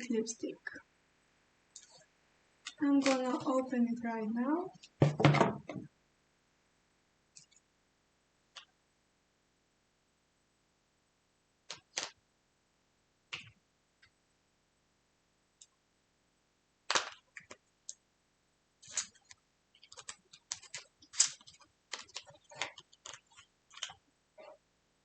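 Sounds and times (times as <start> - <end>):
packaging clicks: 18.8 - 24.0
packaging crackling: 18.8 - 24.0
packaging rustle: 18.8 - 24.0.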